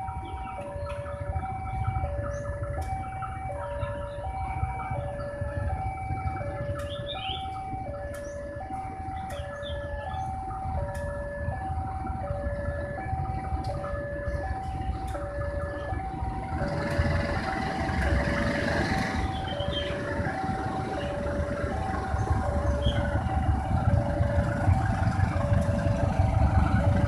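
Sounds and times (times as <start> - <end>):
two-tone level crossing alarm: 0.0 - 27.0
low rumble: 16.1 - 27.0.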